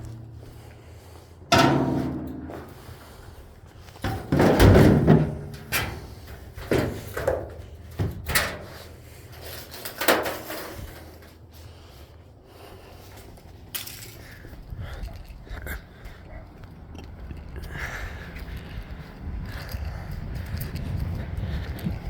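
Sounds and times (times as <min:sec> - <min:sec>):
metal scraping and rattling: 0:00.0 - 0:11.7
sharp knocks and clunks: 0:01.5 - 0:02.9, 0:04.0 - 0:08.8
metal clanking: 0:01.5 - 0:03.2, 0:03.9 - 0:11.4.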